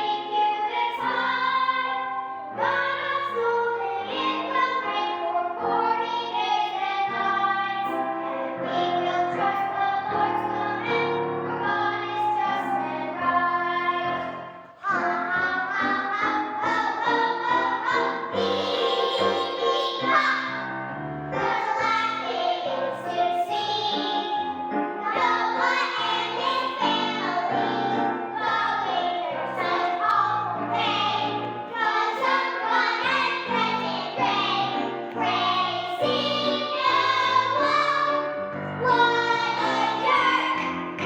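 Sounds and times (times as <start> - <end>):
children's choir singing: 0.0 - 41.0
instrumental accompaniment: 0.0 - 41.0.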